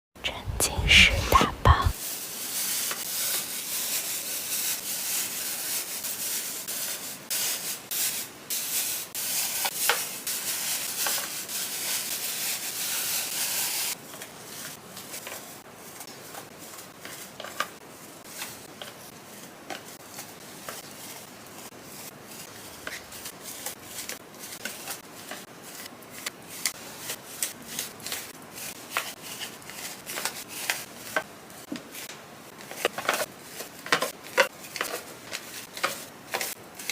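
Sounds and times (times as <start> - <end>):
hands rustling packaging: 9.3 - 36.9
light taps and crinkles: 14.1 - 19.0, 30.1 - 36.6.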